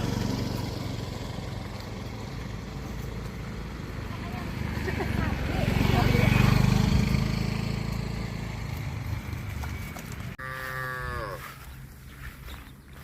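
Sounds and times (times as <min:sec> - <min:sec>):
cattle mooing: 0:10.4 - 0:11.5.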